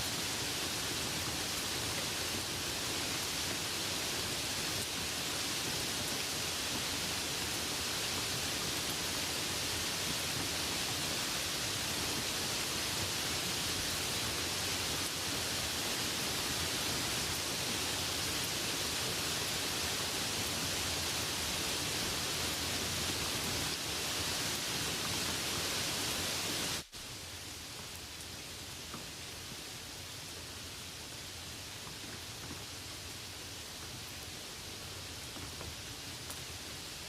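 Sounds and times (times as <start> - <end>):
light rain falling: 0.0 - 37.0.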